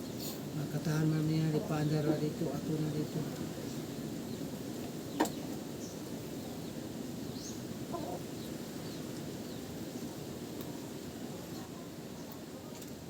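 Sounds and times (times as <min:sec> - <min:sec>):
low steady background noise: 0:00.0 - 0:13.0.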